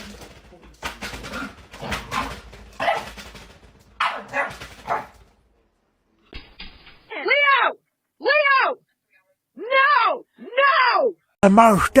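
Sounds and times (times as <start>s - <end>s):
dog barking: 2.1s - 3.2s, 4.0s - 5.2s.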